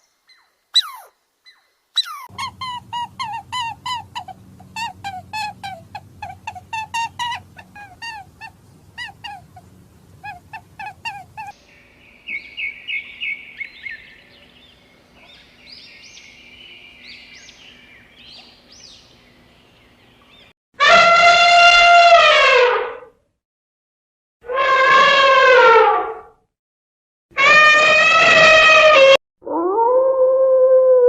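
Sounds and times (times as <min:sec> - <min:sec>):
bird chirps and trills: 0:00.0 - 0:20.5
short pitched animal calls: 0:00.8 - 0:11.6.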